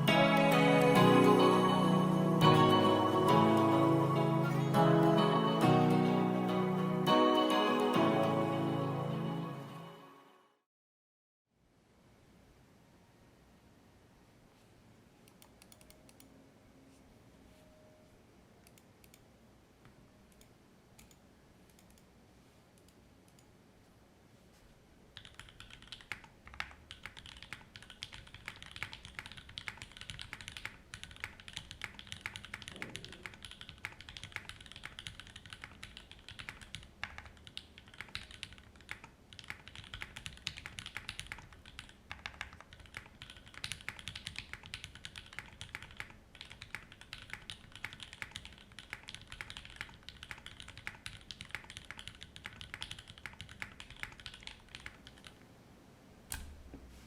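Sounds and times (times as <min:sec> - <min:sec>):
mechanical keyboard typing: 0:25.2 - 0:55.4.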